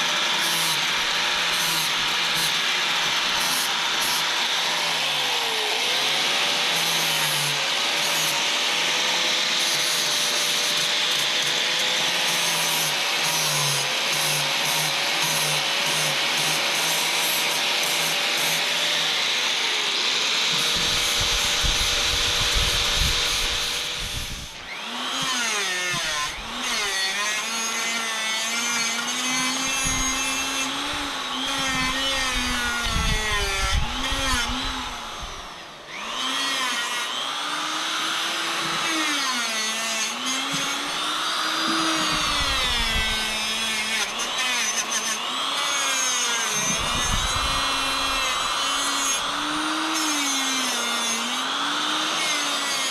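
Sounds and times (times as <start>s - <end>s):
power tool grinding metal: 0.0s - 52.9s.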